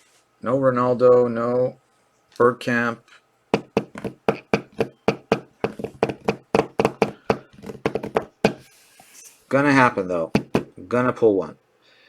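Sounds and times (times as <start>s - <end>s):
knocks and taps on hard surface: 3.6s - 8.6s, 10.3s - 10.8s.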